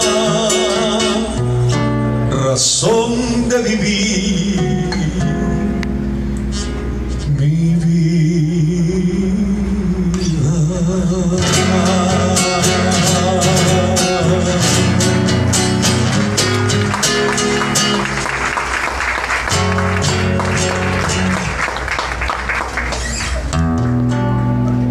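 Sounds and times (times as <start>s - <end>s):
man singing: 0.0s - 5.8s, 7.2s - 15.5s
acoustic guitar strumming: 0.0s - 24.9s.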